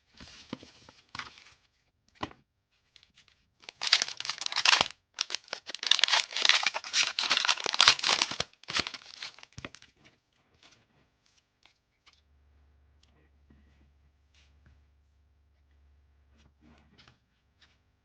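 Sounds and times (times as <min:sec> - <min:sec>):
wrapper tearing and crinkling: 0:03.6 - 0:09.7.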